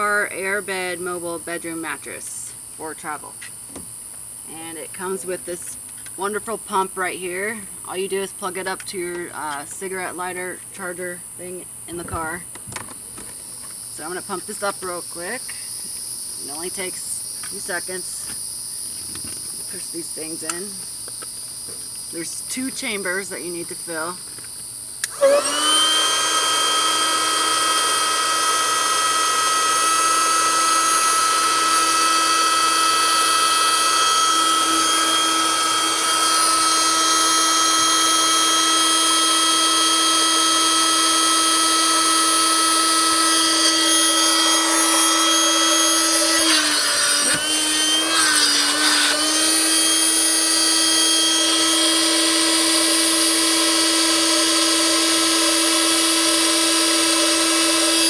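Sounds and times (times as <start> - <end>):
electric air pump motor: 13.1 - 58.0.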